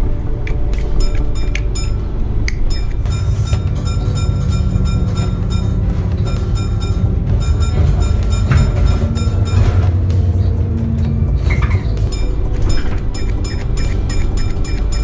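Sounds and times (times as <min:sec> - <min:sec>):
background music: 0:00.0 - 0:15.0
bus engine rumble: 0:03.1 - 0:13.9.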